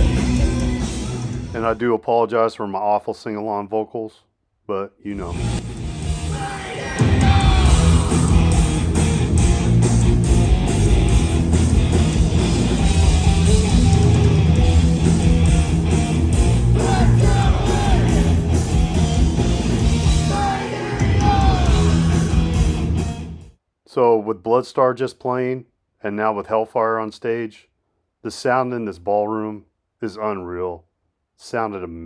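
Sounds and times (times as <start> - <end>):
bass: 0.0 - 1.8, 5.2 - 23.5
distorted electric guitars: 0.0 - 1.8, 5.2 - 23.5
drums: 0.0 - 1.8, 5.2 - 23.6
person singing: 0.0 - 1.8, 6.2 - 9.1, 16.3 - 18.7, 19.9 - 22.8.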